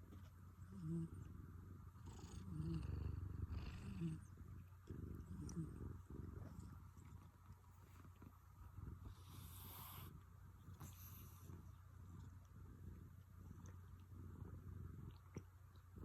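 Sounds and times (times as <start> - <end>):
cat snoring: 0.7 - 7.2, 8.8 - 10.2, 10.8 - 15.2.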